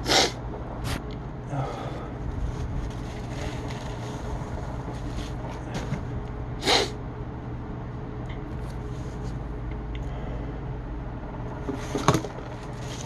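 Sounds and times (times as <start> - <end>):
person sneezing: 0.0 - 0.4, 6.6 - 7.0
steady low hum: 0.0 - 13.0.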